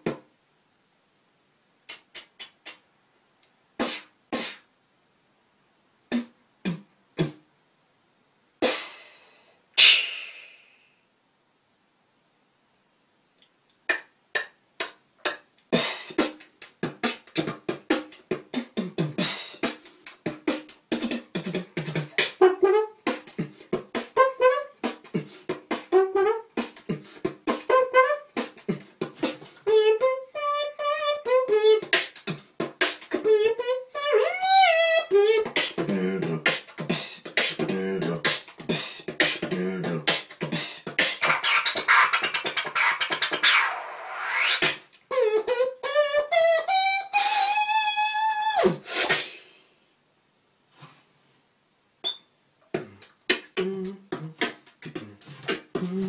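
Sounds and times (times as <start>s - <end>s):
beatboxing: 0.0s - 0.2s, 1.9s - 2.9s, 3.8s - 4.7s, 6.1s - 7.4s, 8.6s - 10.7s, 13.8s - 49.6s, 52.0s - 56.0s
hummed melody: 27.6s - 28.8s, 29.6s - 32.0s, 33.2s - 36.5s, 45.1s - 48.4s, 55.0s - 56.0s.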